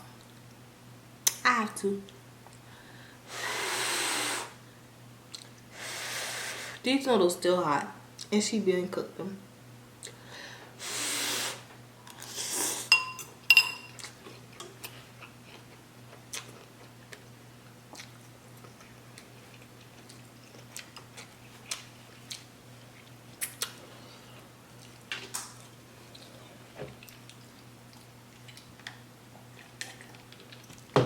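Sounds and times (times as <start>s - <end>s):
utensil clinking on dish: 12.9s - 14.0s
chewing: 13.9s - 17.3s, 17.9s - 30.9s.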